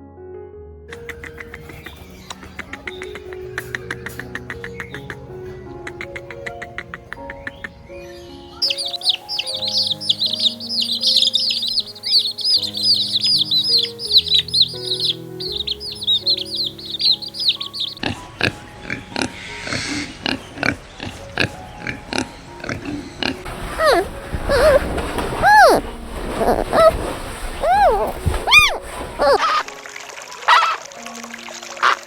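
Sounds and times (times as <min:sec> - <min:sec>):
background music with held notes: 0:00.0 - 0:32.0
small birds chirping: 0:00.9 - 0:29.7
animal grunting: 0:08.6 - 0:29.6.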